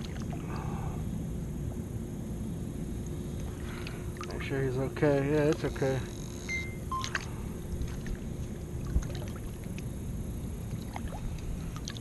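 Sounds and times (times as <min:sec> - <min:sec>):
water sloshing and lapping: 0:00.0 - 0:00.7, 0:03.5 - 0:04.5, 0:06.9 - 0:10.0, 0:10.6 - 0:12.0.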